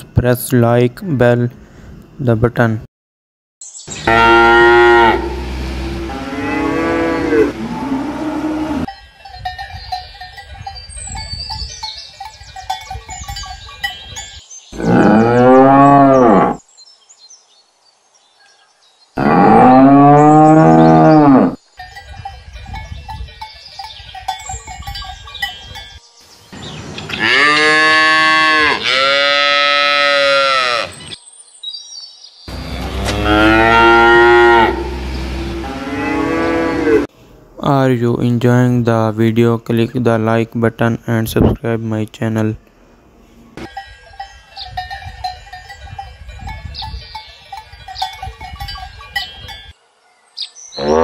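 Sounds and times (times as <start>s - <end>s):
cattle mooing: 4.0s - 8.9s, 14.8s - 16.6s, 19.2s - 21.6s, 27.1s - 31.0s, 32.5s - 37.1s, 50.8s - 51.0s.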